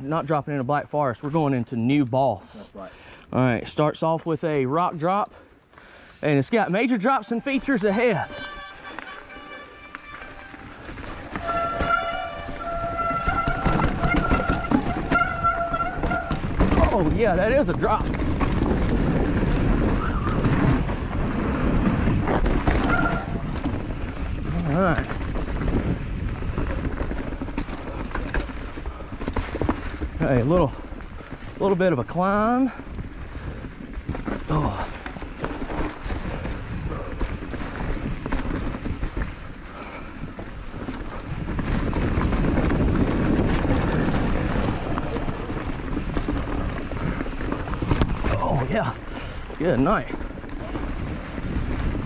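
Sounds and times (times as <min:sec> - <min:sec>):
bike rattling over rocks: 0:06.7 - 0:52.0
wind on microphone: 0:10.3 - 0:31.6, 0:32.9 - 0:52.0.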